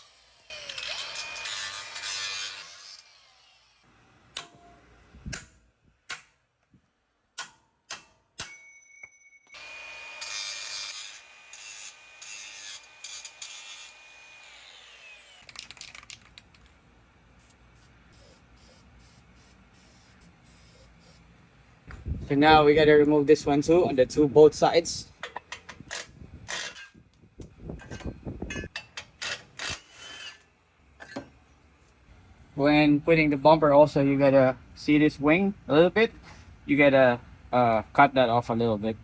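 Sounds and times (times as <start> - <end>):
power cutting tool whining: 0.0 - 3.8, 9.6 - 15.6.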